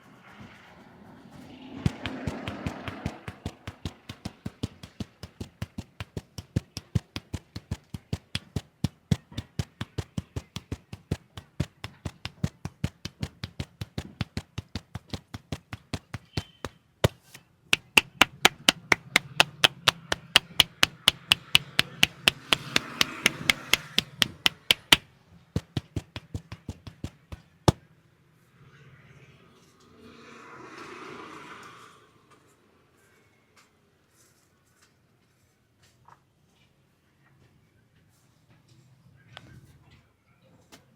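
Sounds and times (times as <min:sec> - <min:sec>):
hands slapping in percussive massage: 0:01.8 - 0:25.0, 0:25.6 - 0:27.8.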